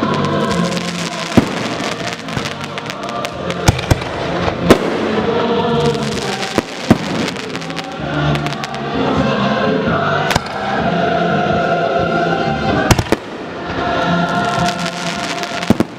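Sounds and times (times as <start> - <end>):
fireworks crackling pops: 0.0 - 5.2, 5.8 - 8.9, 10.3 - 10.6, 12.9 - 15.9
firework bangs: 0.0 - 8.9, 12.9 - 15.9
music playing: 0.0 - 15.9.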